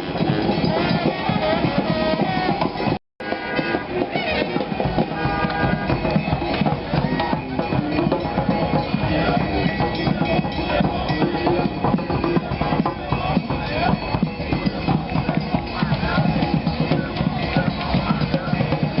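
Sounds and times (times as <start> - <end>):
brass band horns: 0.0 - 8.4
drums beating: 0.0 - 19.0.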